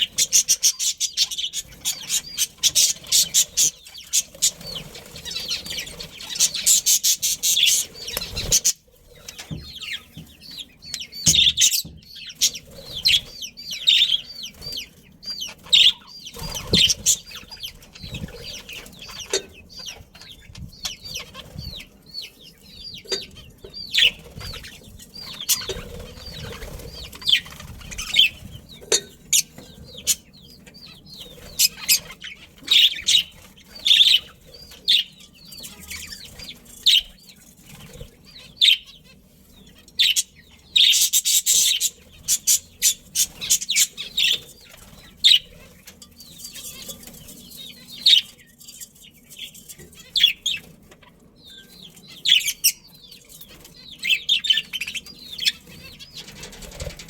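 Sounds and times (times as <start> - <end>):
wings fluttering: 0.0 - 10.1, 11.5 - 22.0, 23.9 - 28.8
budgerigars chirping: 0.0 - 57.0.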